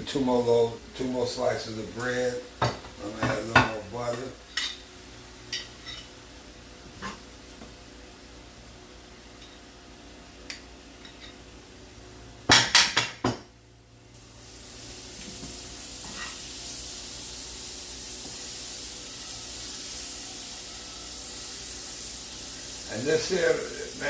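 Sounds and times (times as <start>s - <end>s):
utensil knocking on skillet: 12.5s - 13.5s
butter sizzling in skillet: 14.0s - 24.0s.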